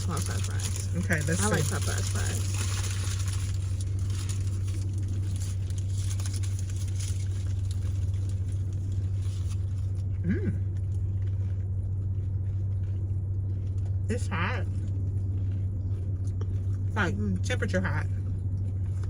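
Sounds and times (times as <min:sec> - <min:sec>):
packaging rustling: 0:00.0 - 0:10.0
steady low hum: 0:00.0 - 0:19.0
person humming: 0:10.2 - 0:10.6.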